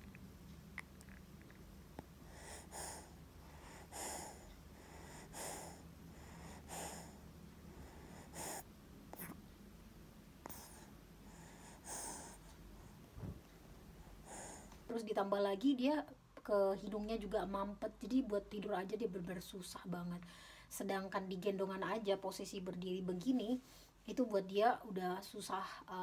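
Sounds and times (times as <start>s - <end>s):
baby breathing through blocked nose: 2.3s - 7.2s, 7.8s - 8.6s, 10.5s - 12.4s, 14.2s - 14.7s.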